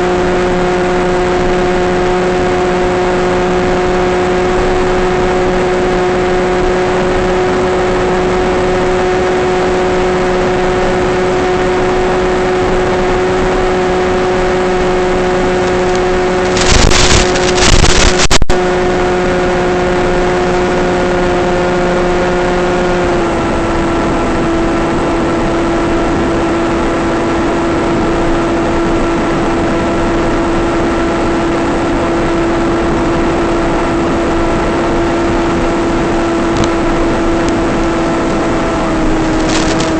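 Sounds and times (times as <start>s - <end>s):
multi-tone hum: 0.0s - 39.9s
loud crackling static: 14.6s - 19.4s, 34.3s - 39.9s.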